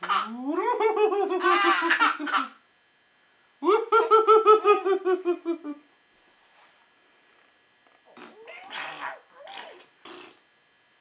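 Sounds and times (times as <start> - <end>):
baby laughing: 0.0 - 2.6.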